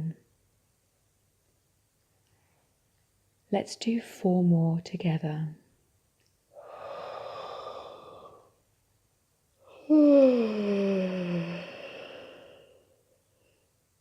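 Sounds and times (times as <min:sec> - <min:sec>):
deep breath in: 0:06.5 - 0:08.6, 0:09.6 - 0:13.7
woman yawning: 0:06.6 - 0:08.5, 0:09.7 - 0:12.9.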